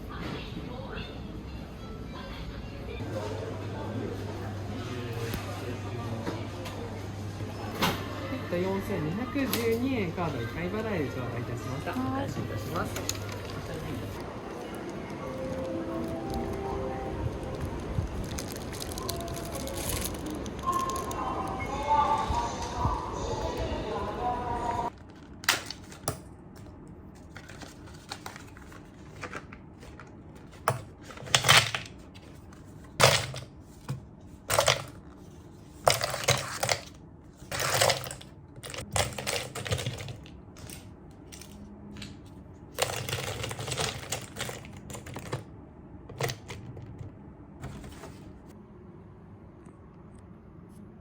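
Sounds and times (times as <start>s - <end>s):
packaging rustling: 12.8s - 21.2s.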